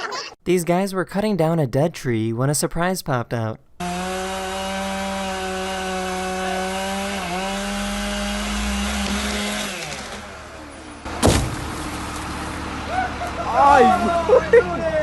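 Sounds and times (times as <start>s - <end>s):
chainsaw cutting wood: 3.8s - 12.6s
loud sudden knock: 11.2s - 11.8s.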